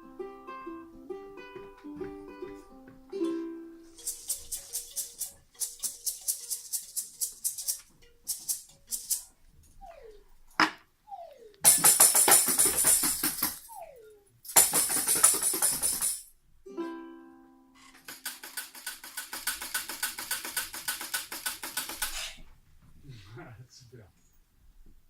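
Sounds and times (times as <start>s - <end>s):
hand percussion rattling: 3.9s - 9.3s, 11.6s - 13.8s, 14.4s - 16.3s, 18.0s - 22.2s
falling whistle-like glides: 11.1s - 11.6s, 13.7s - 14.2s.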